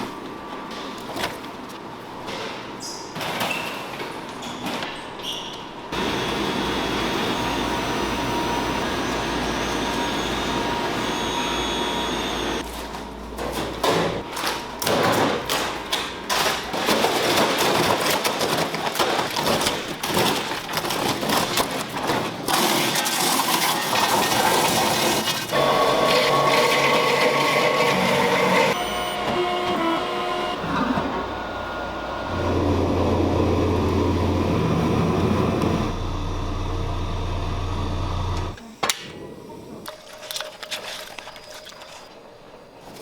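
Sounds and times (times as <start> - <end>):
machinery humming: 5.9 - 14.9, 24.8 - 40.2
machinery clattering and knocking: 12.6 - 36.7
machine whirring: 15.5 - 39.0.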